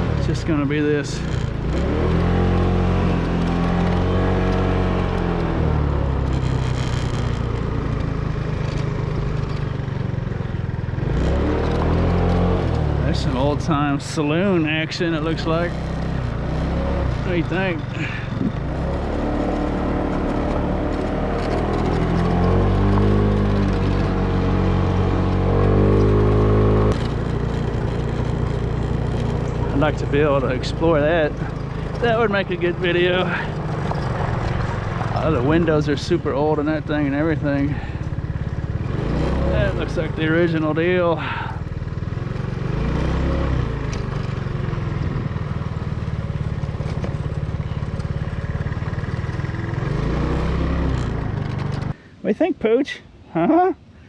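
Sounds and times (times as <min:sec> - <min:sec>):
vehicle engine revving: 0:00.0 - 0:52.1.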